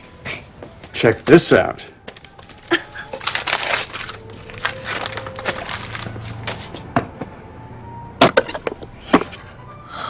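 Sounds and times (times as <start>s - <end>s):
wrapping paper rustling and tearing: 2.1s - 6.7s.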